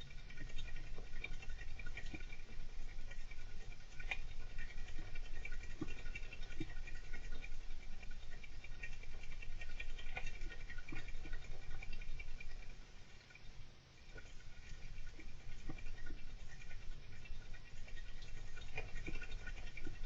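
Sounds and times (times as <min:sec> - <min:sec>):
hamster scratching and scrabbling: 0:00.0 - 0:20.0.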